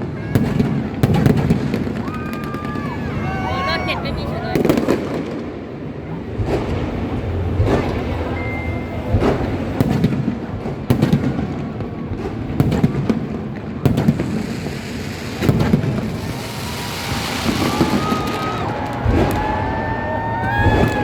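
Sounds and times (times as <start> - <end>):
fireworks bangs: 0.0 - 21.0
fireworks rising whistles: 13.8 - 21.0.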